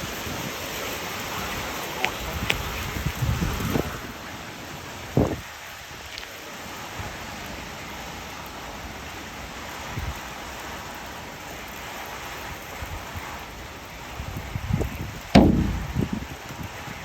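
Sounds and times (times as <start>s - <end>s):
low thump: 15.4s - 16.3s.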